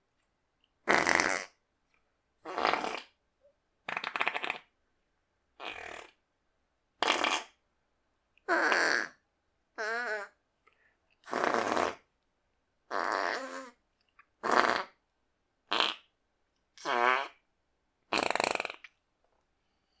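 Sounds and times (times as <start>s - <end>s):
short farts: 0.9s - 1.6s, 2.5s - 3.2s, 3.9s - 4.7s, 5.6s - 6.2s, 7.0s - 7.6s, 8.5s - 9.2s, 11.3s - 12.1s, 12.9s - 13.8s, 14.4s - 15.0s, 15.7s - 16.1s, 16.8s - 17.4s, 18.1s - 18.9s.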